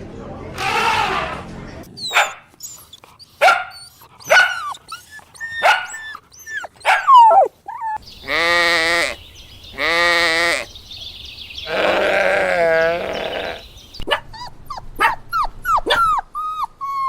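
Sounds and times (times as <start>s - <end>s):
long steady bleat: 0.6s - 1.4s, 8.2s - 10.7s, 11.6s - 13.7s
dog yipping and barking: 2.0s - 8.0s, 14.0s - 17.0s.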